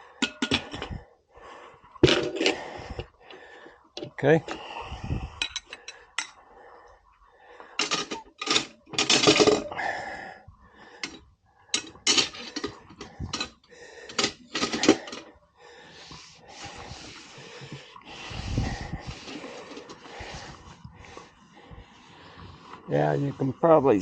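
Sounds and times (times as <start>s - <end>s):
metal tools clattering: 7.8s - 9.7s, 11.8s - 15.3s.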